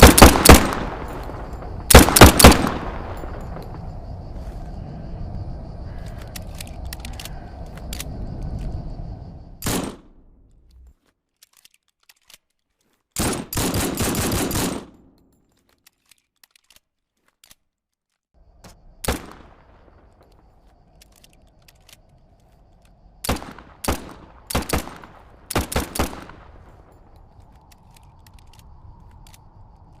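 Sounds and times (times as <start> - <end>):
pistol gunshots: 0.0 - 3.4.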